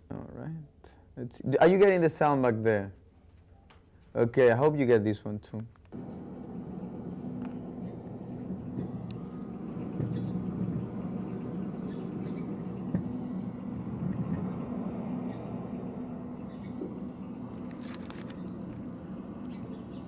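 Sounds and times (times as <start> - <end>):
low rumbling drone: 6.0 - 20.0.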